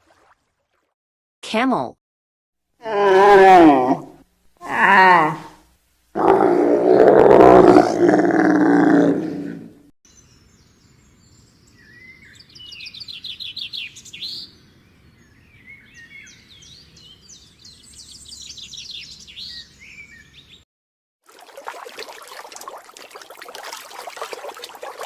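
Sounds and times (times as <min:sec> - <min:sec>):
songbird singing: 0:10.1 - 0:20.6.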